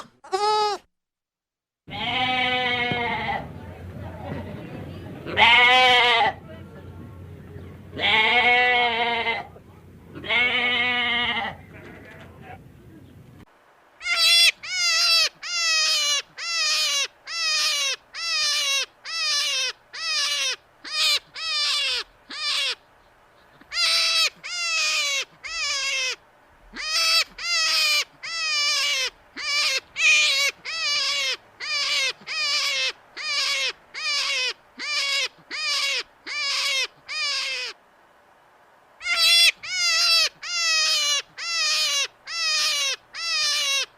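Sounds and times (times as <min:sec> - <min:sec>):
animal squealing calls: 0:14.0 - 0:22.8, 0:23.5 - 0:37.8, 0:39.0 - 0:43.9.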